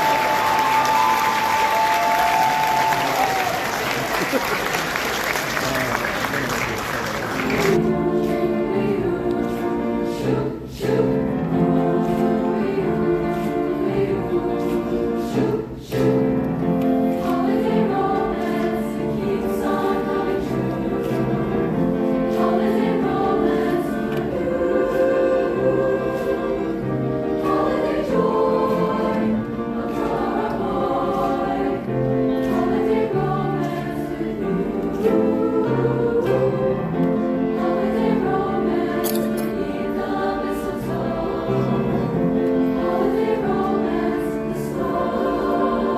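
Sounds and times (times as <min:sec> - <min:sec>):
choir singing: 0:00.0 - 0:05.9, 0:07.0 - 0:45.9.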